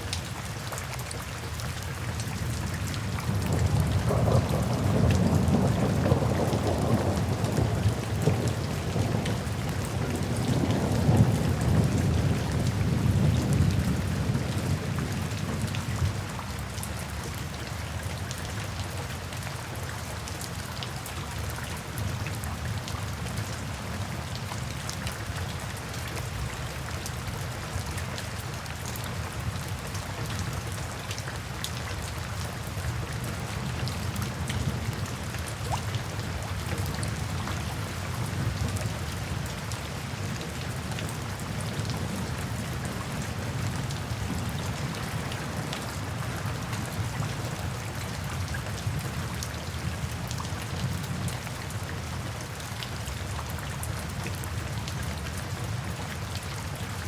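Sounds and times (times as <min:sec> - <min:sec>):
heavy rain falling: 0:00.0 - 0:57.0
low thunder rumble: 0:03.3 - 0:16.2.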